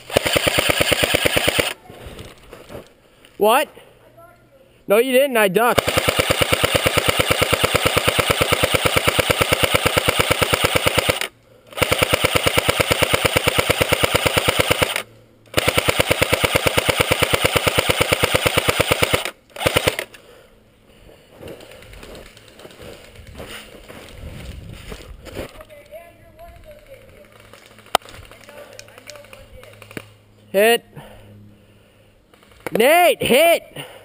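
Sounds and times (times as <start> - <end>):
airsoft machine gun firing full-auto: 0.0 - 1.8, 5.7 - 20.1.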